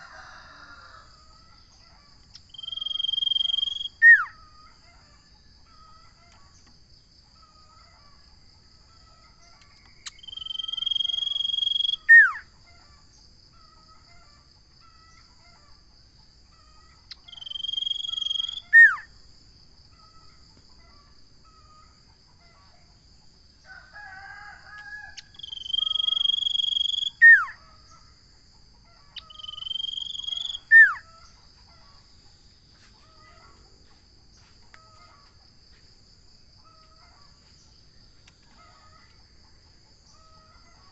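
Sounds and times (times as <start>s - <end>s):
bird whistling song: 2.4s - 4.4s, 10.0s - 12.5s, 17.1s - 19.1s, 25.3s - 27.6s, 29.2s - 31.1s
bird chatter: 29.1s - 32.0s.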